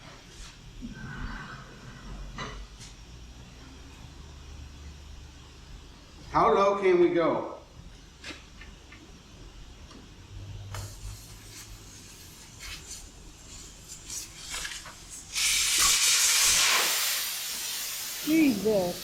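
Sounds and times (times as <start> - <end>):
compressed air hissing: 10.7 - 19.0.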